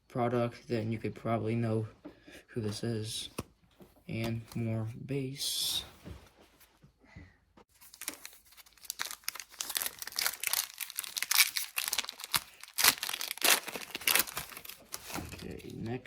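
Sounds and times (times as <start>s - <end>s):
plastic wrapper crinkling: 7.7s - 16.0s.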